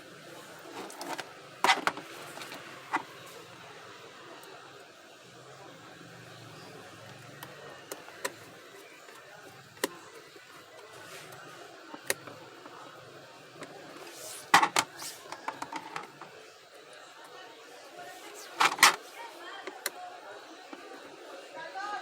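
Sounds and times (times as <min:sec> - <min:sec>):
plastic parts clicking and rattling: 0:00.6 - 0:03.2, 0:13.6 - 0:16.3, 0:18.4 - 0:19.0.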